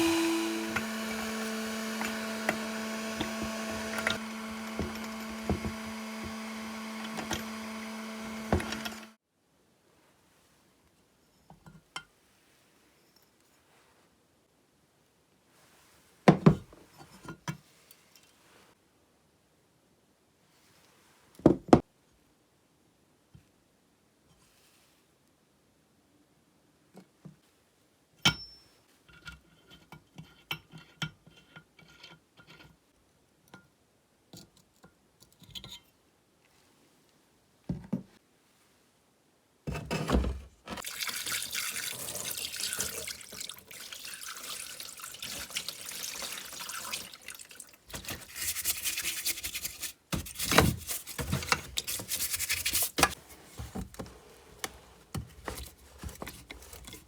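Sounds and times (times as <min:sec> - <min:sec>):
water running onto parts: 0:00.0 - 0:09.2, 0:40.7 - 0:53.2.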